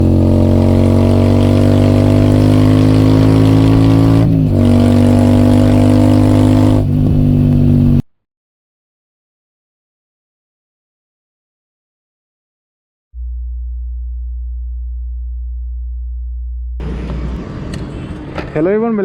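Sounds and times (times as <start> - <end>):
motorcycle engine revving: 0.0 - 8.0.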